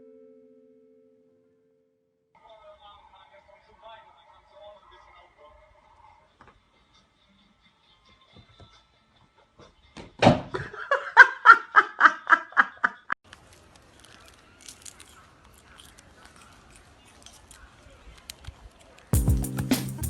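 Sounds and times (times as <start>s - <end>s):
person laughing: 10.6s - 13.2s.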